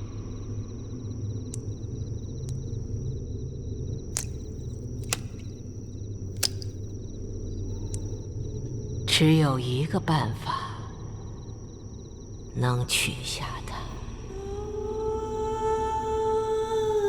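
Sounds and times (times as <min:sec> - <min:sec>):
rhythmic insect chirping: 0:00.0 - 0:15.5
low steady drone: 0:00.0 - 0:17.0
sharp clicks or snaps: 0:04.2 - 0:05.6, 0:06.3 - 0:06.8, 0:07.8 - 0:08.1.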